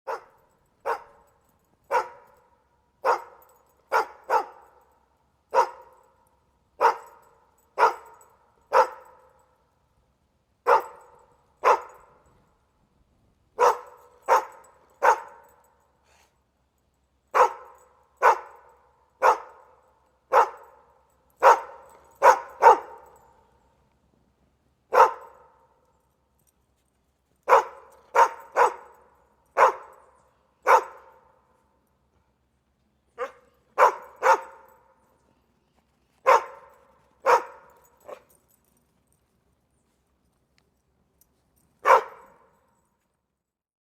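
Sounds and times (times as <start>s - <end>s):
dog barking: 0.1s - 4.9s, 5.5s - 6.1s, 6.8s - 9.4s, 10.6s - 12.2s, 13.6s - 15.7s, 17.3s - 23.3s, 24.9s - 25.7s, 27.4s - 31.3s, 33.2s - 34.9s, 36.2s - 38.3s, 41.8s - 42.5s.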